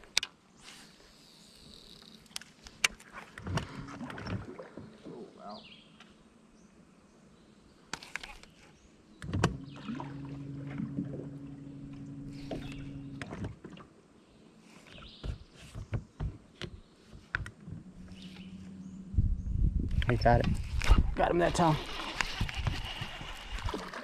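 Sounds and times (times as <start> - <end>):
electric boat motor humming: 9.3 - 13.6, 17.6 - 20.8, 21.4 - 24.0
clicks and knocks on boat: 14.9 - 18.3.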